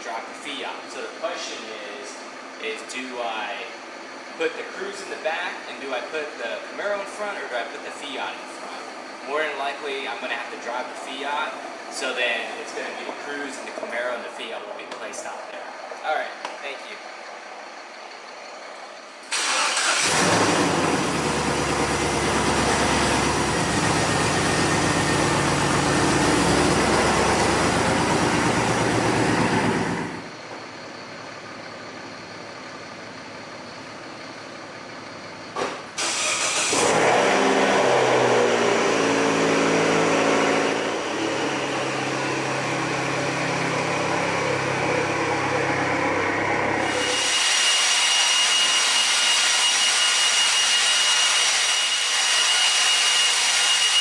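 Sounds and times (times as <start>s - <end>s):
car engine starting and running: 17.0s - 54.0s.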